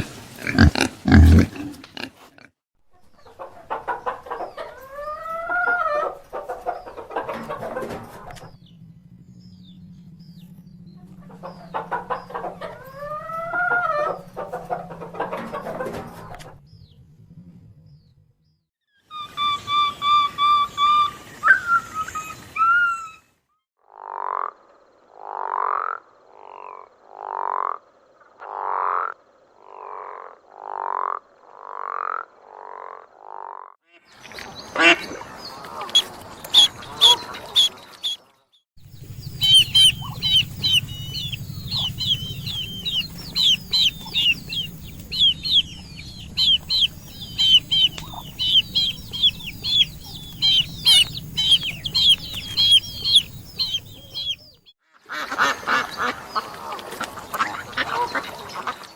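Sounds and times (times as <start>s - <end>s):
low hum: 8.4s - 12.9s, 38.8s - 54.6s
rapid high chirps: 38.8s - 54.7s
rising animal calls: 38.8s - 54.7s.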